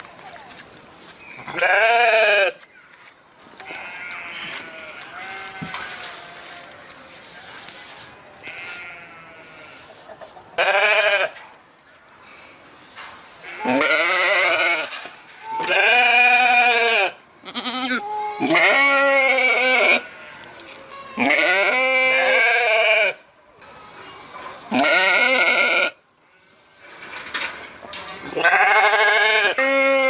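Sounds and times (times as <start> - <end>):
sheep bleating: 3.6 - 6.5, 8.4 - 9.8, 15.6 - 23.2, 28.4 - 30.0.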